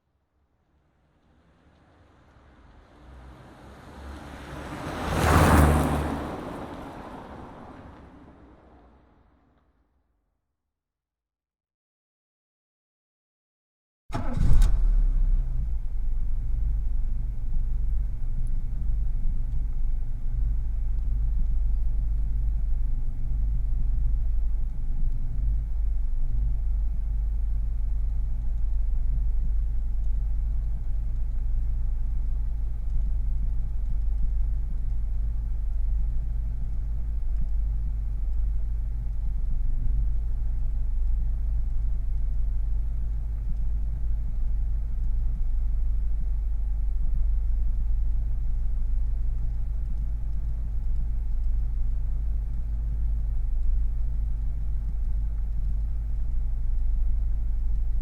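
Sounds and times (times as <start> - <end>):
car engine idling: 14.1 - 58.0.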